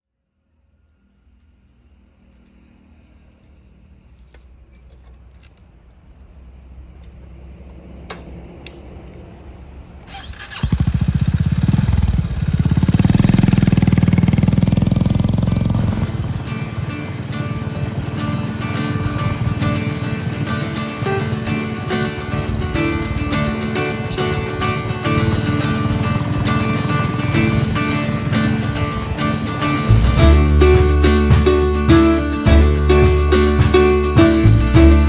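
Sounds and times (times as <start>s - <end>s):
motorcycle engine starting and idling: 10.0s - 35.0s.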